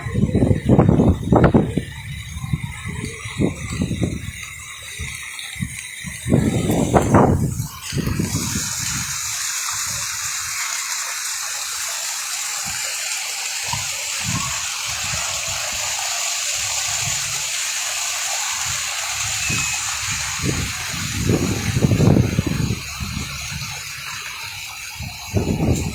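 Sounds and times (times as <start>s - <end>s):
heavy rain falling: 13.7s - 25.9s.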